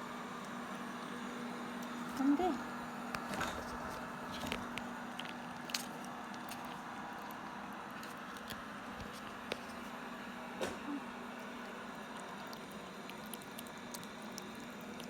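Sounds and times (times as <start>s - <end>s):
steady low hum: 0.0s - 15.0s
cats licking wet clicks: 3.1s - 10.1s, 11.0s - 15.0s.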